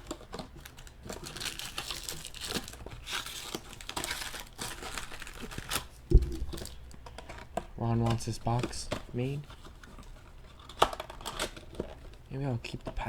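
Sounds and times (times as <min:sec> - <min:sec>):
card wrappers tearing and crinkling: 0:00.0 - 0:13.0
sharp thump: 0:06.1 - 0:06.7.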